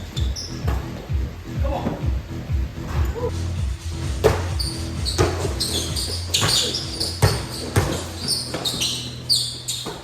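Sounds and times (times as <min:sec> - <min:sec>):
sneaker squeaks: 0:00.0 - 0:01.1, 0:04.1 - 0:10.0
basketball bouncing on gym floor: 0:00.0 - 0:02.2, 0:04.0 - 0:10.0.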